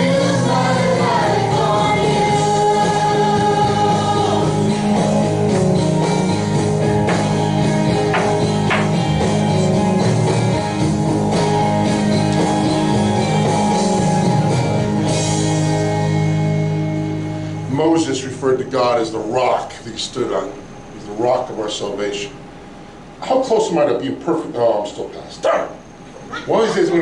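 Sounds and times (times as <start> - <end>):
drums: 0.0 - 18.4
guitar: 0.0 - 19.7.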